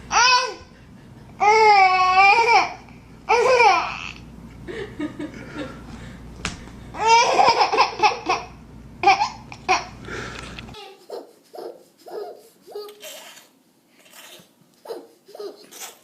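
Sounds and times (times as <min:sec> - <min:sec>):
baby laughing: 0:07.0 - 0:10.0, 0:10.7 - 0:16.0.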